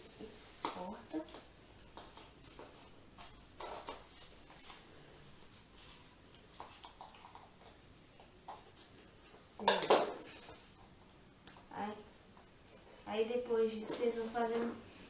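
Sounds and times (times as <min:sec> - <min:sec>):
paper rustling: 0:01.3 - 0:07.8.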